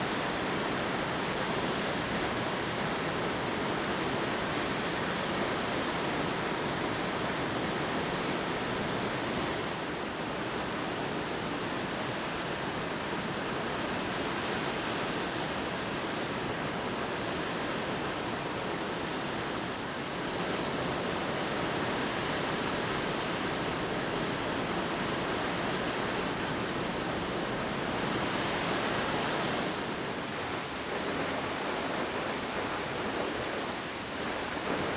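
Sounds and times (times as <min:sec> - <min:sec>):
waterfall rushing: 0:00.0 - 0:09.5, 0:29.1 - 0:34.9.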